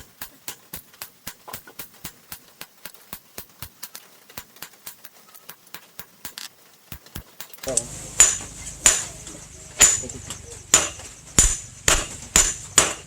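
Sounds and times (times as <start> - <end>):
hammer striking steel: 7.6 - 13.0.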